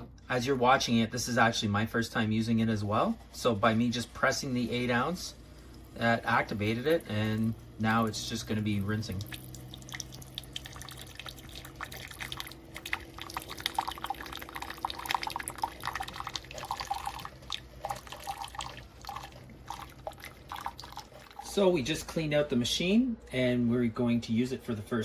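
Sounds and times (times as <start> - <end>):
coffee maker humming: 2.8 - 22.0
water spattering and dripping: 4.7 - 21.6.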